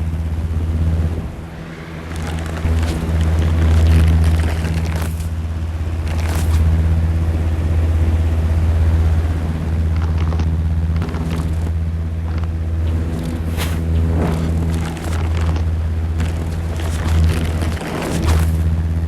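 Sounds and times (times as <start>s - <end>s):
film projector hum and clatter: 0.0s - 19.0s
short crackles: 1.6s - 6.8s, 9.8s - 18.8s.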